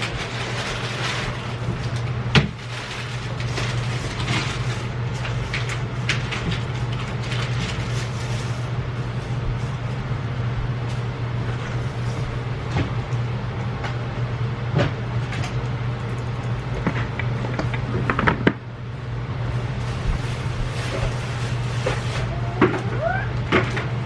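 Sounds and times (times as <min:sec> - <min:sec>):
packages clicking and knocking: 0:00.0 - 0:08.4, 0:16.8 - 0:18.6
steady low hum: 0:00.0 - 0:24.0.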